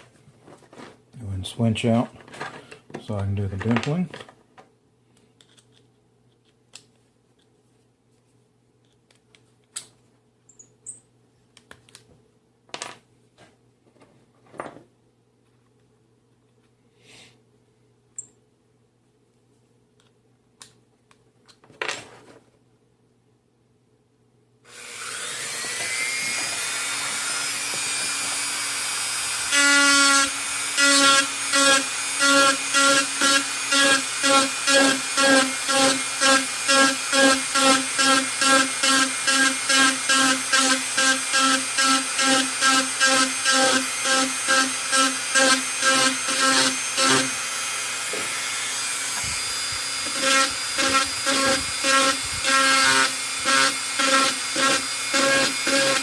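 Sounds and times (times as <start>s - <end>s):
rotary tool whining: 24.7s - 56.0s.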